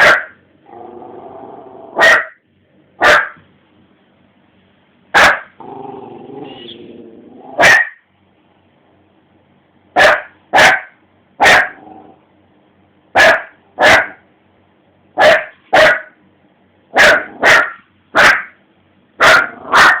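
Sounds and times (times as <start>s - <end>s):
dog barking: 0.0s - 0.4s, 2.0s - 2.4s, 3.0s - 3.4s, 5.1s - 5.6s, 7.6s - 8.0s, 10.0s - 11.8s, 13.2s - 14.2s, 15.2s - 16.2s, 16.9s - 18.6s, 19.2s - 20.0s.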